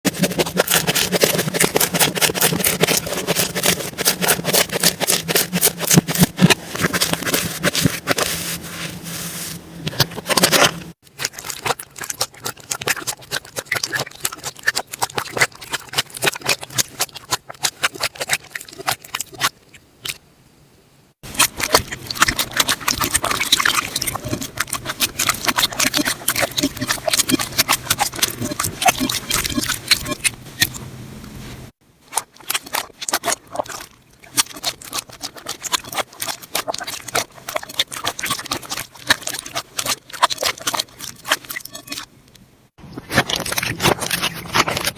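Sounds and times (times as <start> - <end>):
slime squished by hand: 10.2 - 20.2, 21.3 - 30.8, 32.1 - 42.1.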